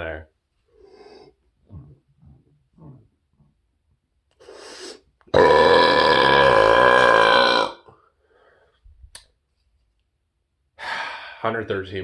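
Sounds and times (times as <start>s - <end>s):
man burping loudly: 5.3s - 7.9s
short breath in: 8.2s - 8.8s.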